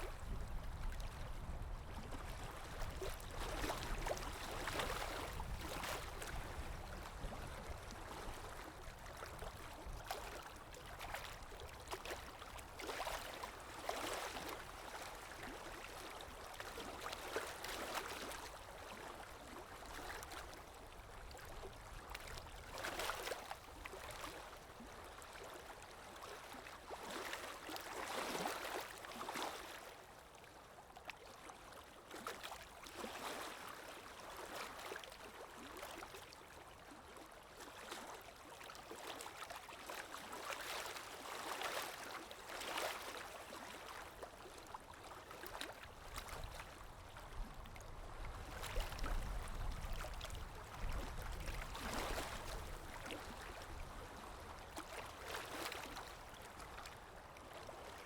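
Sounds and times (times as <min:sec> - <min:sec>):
waves lapping: 0:02.4 - 0:19.2, 0:39.1 - 0:47.4, 0:48.3 - 0:57.0.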